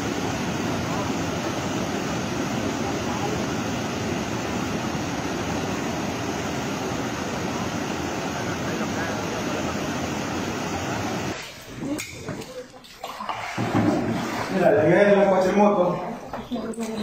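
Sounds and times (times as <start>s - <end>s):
heavy rain: 0.0s - 11.5s.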